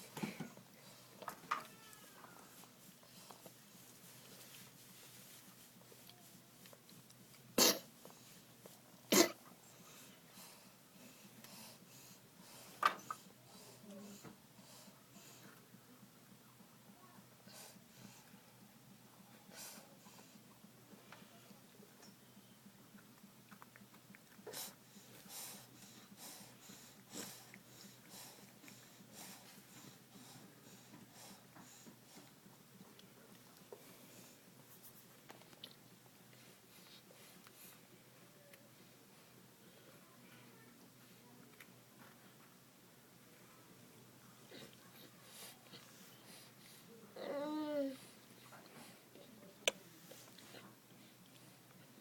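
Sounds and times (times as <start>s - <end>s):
short coughs: 7.6s - 7.9s, 9.1s - 9.4s
faint sniffs: 24.5s - 32.4s.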